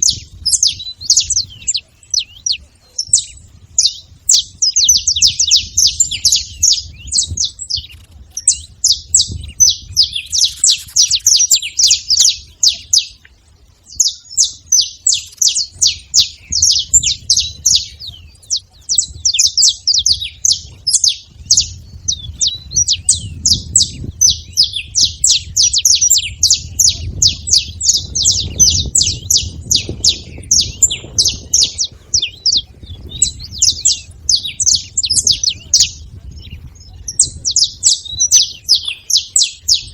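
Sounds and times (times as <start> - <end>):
finch chirping: 0.0 - 39.9.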